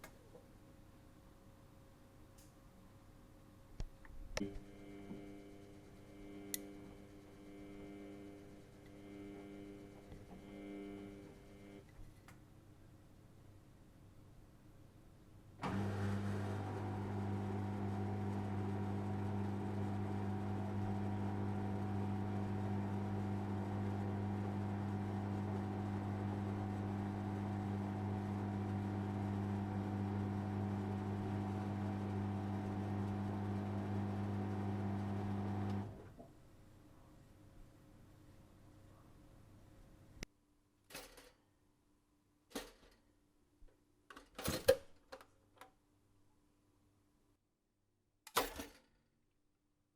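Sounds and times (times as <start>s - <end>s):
kitchen appliance humming: 4.4s - 11.8s, 15.6s - 36.2s.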